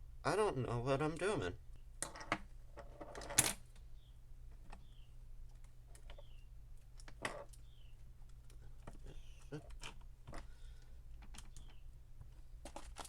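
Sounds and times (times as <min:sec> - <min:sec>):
small clicks and taps of parts: 0:09.6 - 0:13.0.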